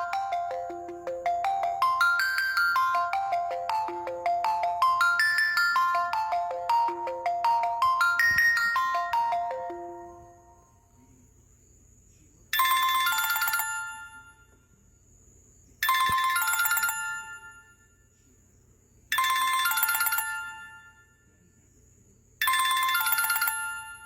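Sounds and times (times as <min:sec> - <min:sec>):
phone ringtone chiming melody: 0:00.0 - 0:10.6, 0:12.6 - 0:14.4, 0:15.8 - 0:17.8, 0:19.1 - 0:21.1, 0:22.4 - 0:24.0.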